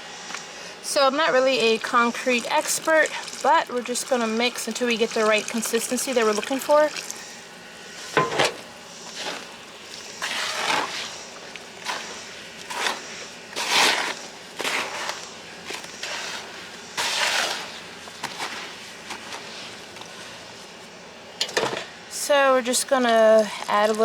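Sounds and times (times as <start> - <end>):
mortar mix crunching and scraping: 9.0 - 20.9.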